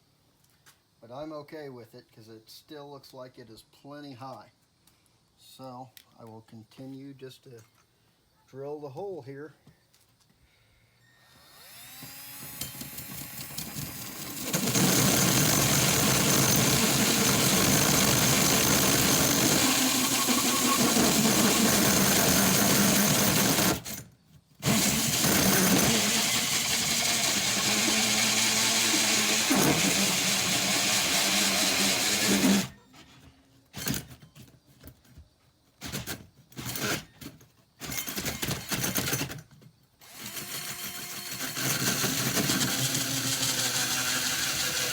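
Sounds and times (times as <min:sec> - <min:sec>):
power drill boring through wall: 0:11.1 - 0:24.0, 0:24.6 - 0:32.8, 0:37.8 - 0:39.4, 0:40.0 - 0:44.9.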